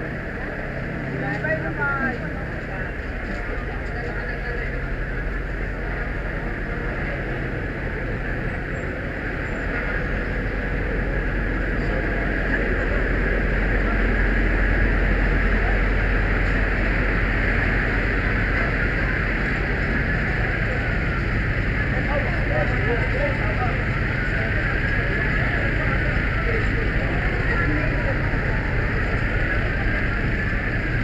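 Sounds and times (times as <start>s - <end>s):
vehicle engine rumbling: 0.0s - 31.0s.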